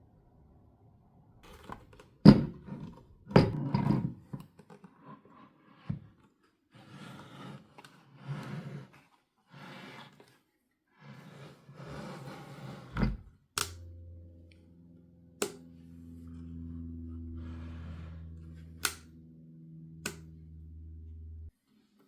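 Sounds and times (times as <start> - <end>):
light click: 18.8 - 19.2, 20.0 - 20.4.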